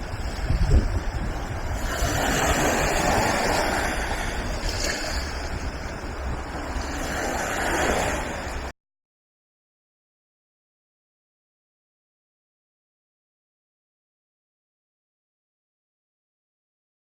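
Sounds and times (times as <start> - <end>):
sea surf: 0.0 - 8.7
wind buffeting microphone: 0.0 - 8.7.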